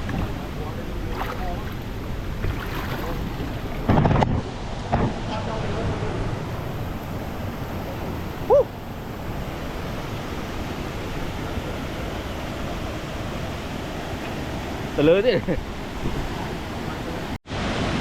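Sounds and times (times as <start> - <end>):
waterfall rushing: 4.5 - 18.0.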